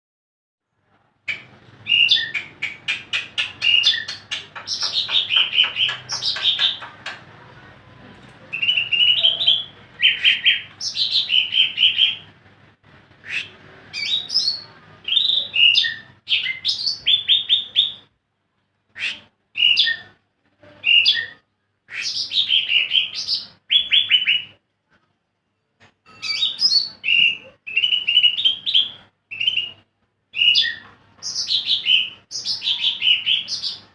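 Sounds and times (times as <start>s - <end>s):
bird singing high whistles: 30.4s - 30.8s.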